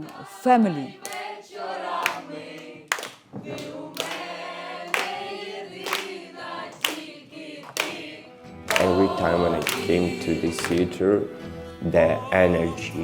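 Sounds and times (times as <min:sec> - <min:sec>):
group singing unaccompanied: 0:00.0 - 0:13.0
sharp percussive beat: 0:08.7 - 0:11.0.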